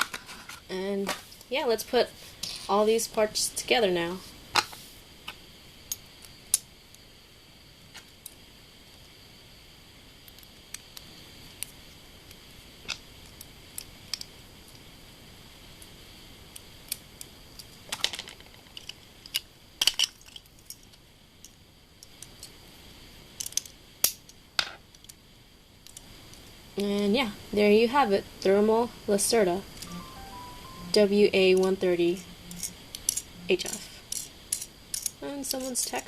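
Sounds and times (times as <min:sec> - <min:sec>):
spinning-top parts clicking: 0:32.6 - 0:35.8.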